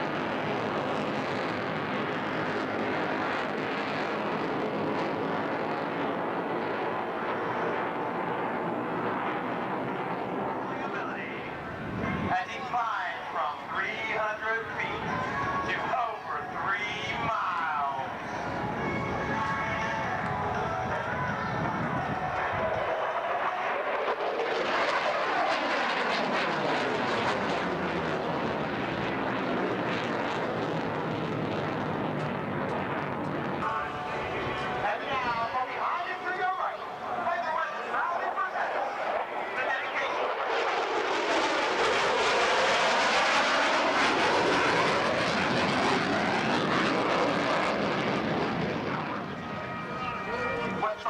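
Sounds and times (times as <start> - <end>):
airplane flying past: 13.6 - 51.0.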